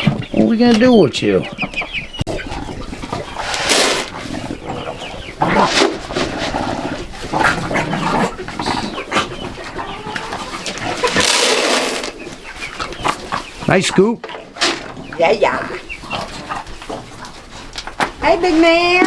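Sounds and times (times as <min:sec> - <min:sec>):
barn handling noises: 0:00.0 - 0:19.0
chickens clucking: 0:00.0 - 0:19.0
loud rustling bursts: 0:03.4 - 0:04.3, 0:10.8 - 0:12.2.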